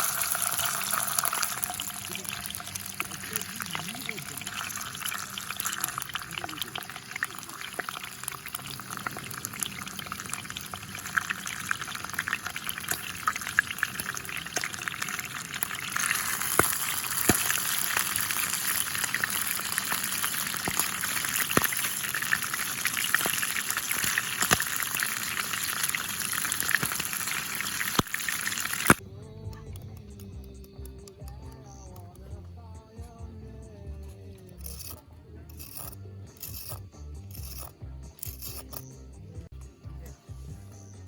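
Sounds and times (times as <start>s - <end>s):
fat popping and spitting: 0.0s - 29.0s
food sizzling on a grill: 0.0s - 29.0s.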